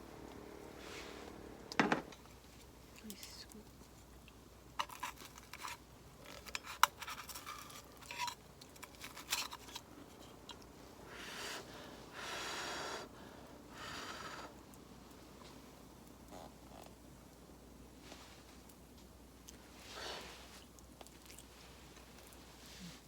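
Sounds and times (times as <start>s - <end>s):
handling clicks and scrapes: 4.8s - 10.7s.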